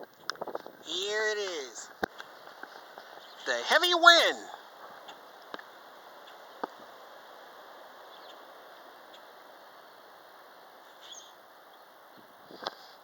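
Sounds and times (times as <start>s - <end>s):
faint high chirp: 11.0s - 11.8s.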